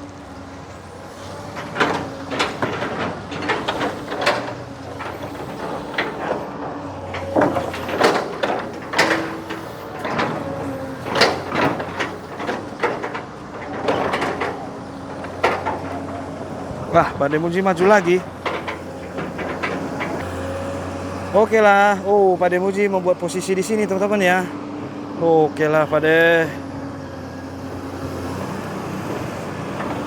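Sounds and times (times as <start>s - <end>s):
excavator diesel engine droning: 0.0s - 30.0s
excavator bucket knocking: 1.2s - 21.2s, 29.1s - 30.0s.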